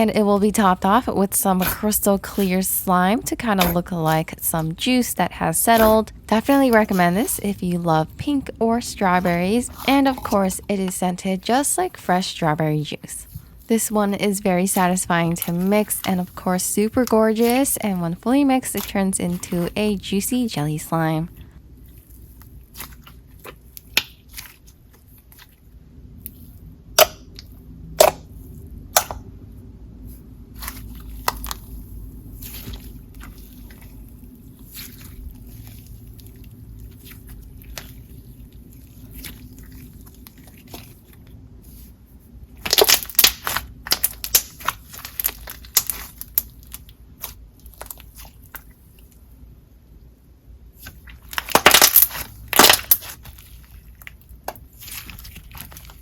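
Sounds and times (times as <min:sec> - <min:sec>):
slime crackling and popping: 0:03.5 - 0:04.5, 0:05.7 - 0:07.5, 0:09.0 - 0:10.4, 0:14.0 - 0:19.8, 0:21.9 - 0:25.6, 0:30.6 - 0:41.9, 0:42.5 - 0:48.8, 0:50.8 - 0:56.0.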